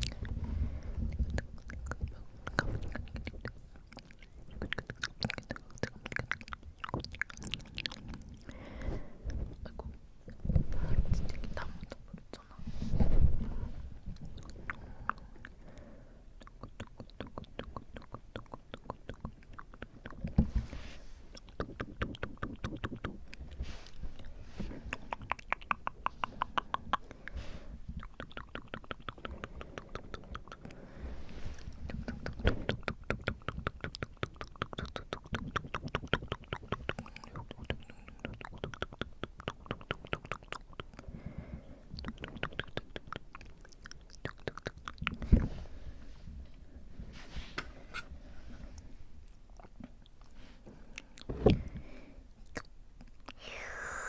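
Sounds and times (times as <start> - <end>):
tongue and lip clicks: 0.0 - 0.4, 1.0 - 8.6, 14.1 - 15.8, 16.4 - 20.6, 21.3 - 30.8, 31.6 - 41.1, 41.9 - 45.5, 49.2 - 51.6, 52.4 - 54.0.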